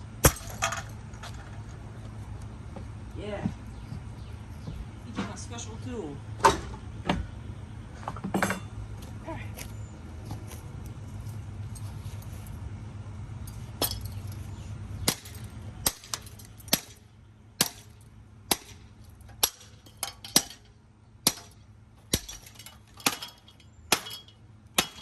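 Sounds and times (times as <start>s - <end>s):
steady low rumble: 0.0s - 25.0s
sharp metallic clanks: 0.2s - 1.4s, 8.2s - 8.8s, 13.4s - 25.0s.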